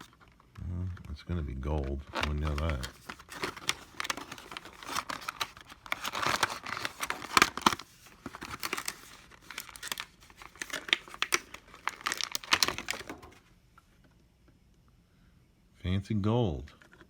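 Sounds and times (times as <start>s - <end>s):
packaging crinkling and tearing: 0.0s - 0.6s, 1.8s - 13.5s.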